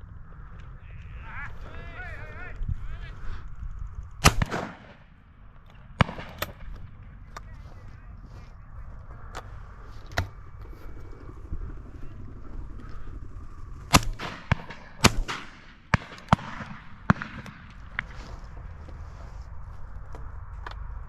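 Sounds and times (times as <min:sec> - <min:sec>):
shotguns firing: 0:04.2 - 0:07.0, 0:13.8 - 0:18.3.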